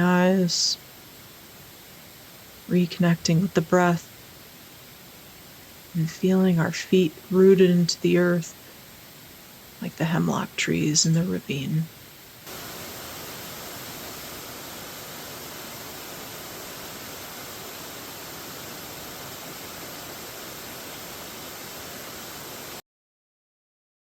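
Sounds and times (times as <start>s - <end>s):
steady rushing noise: 12.2s - 22.8s.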